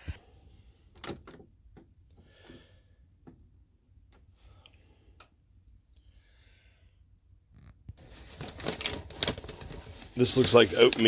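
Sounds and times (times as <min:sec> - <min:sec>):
soft rustling: 0:08.0 - 0:11.0.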